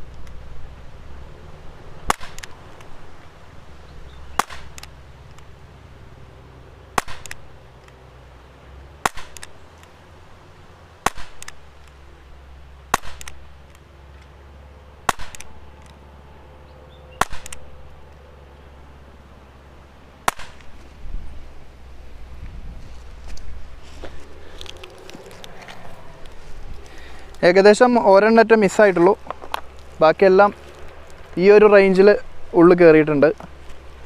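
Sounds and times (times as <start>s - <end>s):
air pistol shots: 2.1s - 2.5s, 4.3s - 4.9s, 7.0s - 7.5s, 9.0s - 9.6s, 11.0s - 11.7s, 12.9s - 13.6s, 15.0s - 15.7s, 17.2s - 17.7s, 20.2s - 20.7s.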